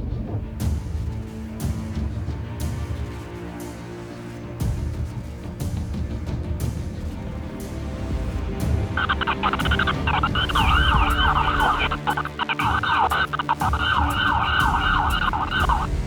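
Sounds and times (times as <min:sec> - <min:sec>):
emergency siren yelping: 0:09.0 - 0:16.0.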